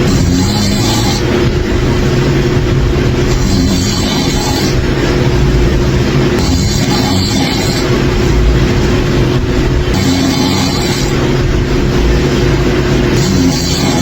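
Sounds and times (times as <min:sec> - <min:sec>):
person snoring: 0:00.0 - 0:01.4, 0:03.3 - 0:04.9, 0:05.8 - 0:08.6, 0:09.8 - 0:11.4, 0:13.1 - 0:14.0.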